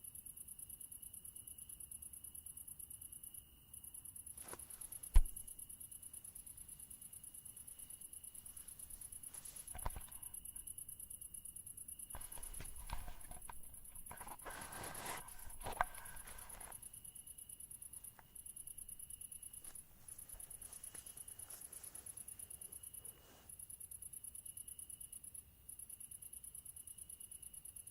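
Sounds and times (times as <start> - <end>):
crickets trilling: 0.0 - 27.9
rustling with clicks: 7.8 - 11.0, 12.1 - 16.9.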